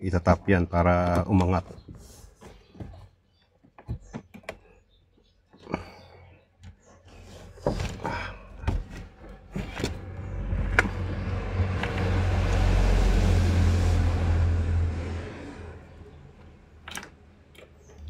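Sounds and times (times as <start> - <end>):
motor vehicle passing: 9.6 - 16.8.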